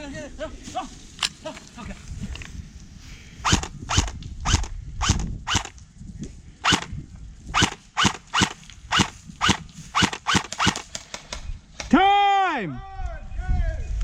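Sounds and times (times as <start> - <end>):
airsoft pistol shots: 6.6 - 6.9, 7.6 - 10.9.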